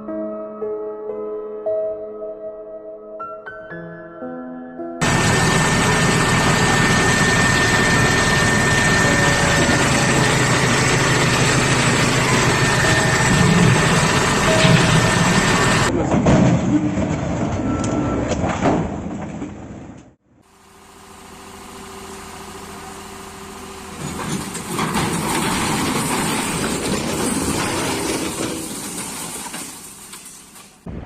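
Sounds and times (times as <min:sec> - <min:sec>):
vehicle engine: 0:05.0 - 0:15.9, 0:20.5 - 0:30.8.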